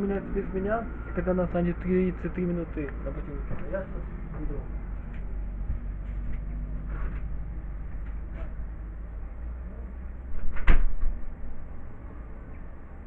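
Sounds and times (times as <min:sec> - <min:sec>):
steady low rumble: 0:00.0 - 0:13.0
door slamming shut: 0:10.3 - 0:11.3.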